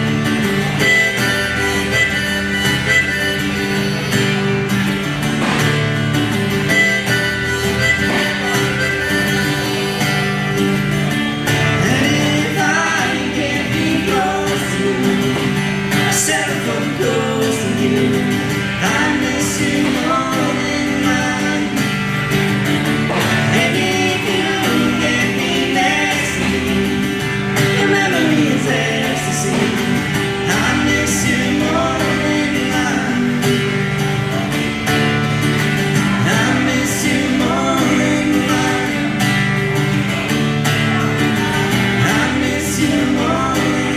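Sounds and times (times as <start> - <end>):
live country band playing: 0.0 - 43.9
person singing: 11.7 - 34.5, 35.8 - 39.7, 40.8 - 43.9.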